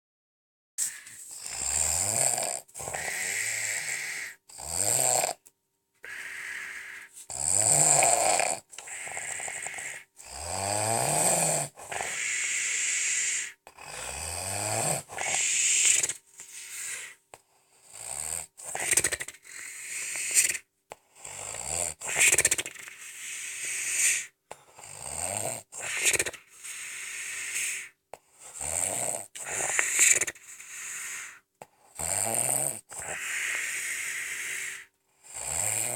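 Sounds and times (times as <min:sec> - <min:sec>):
rasping snores: 0:00.8 - 0:05.4, 0:06.0 - 0:35.9.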